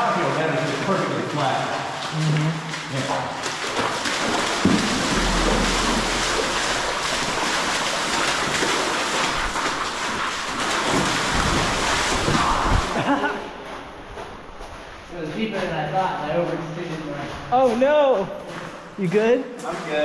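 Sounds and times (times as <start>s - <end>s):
water splashing and sloshing: 0.0s - 20.0s
low thumps: 4.2s - 8.9s.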